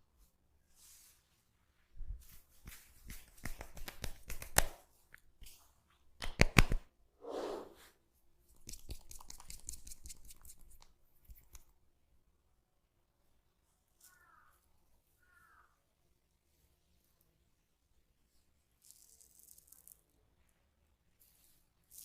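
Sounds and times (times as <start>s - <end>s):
crackling and clicking from massage: 2.2s - 5.6s, 6.2s - 6.9s, 8.5s - 11.8s, 18.8s - 20.1s.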